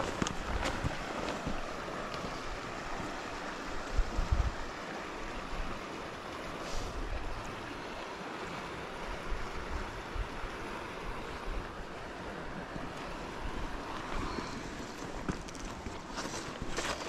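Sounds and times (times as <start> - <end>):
wind buffeting microphone: 0.0 - 5.9
river water rushing over rocks: 0.0 - 17.0.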